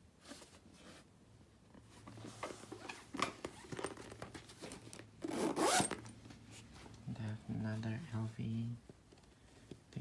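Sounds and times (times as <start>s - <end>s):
bag clicking and rubbing: 2.4s - 6.1s
zipper being pulled: 5.2s - 6.1s.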